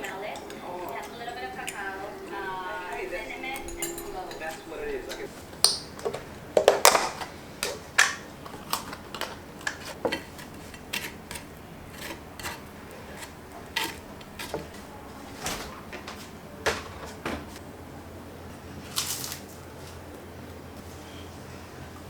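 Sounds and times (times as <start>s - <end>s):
dishes and utensils clinking: 0.0s - 17.6s.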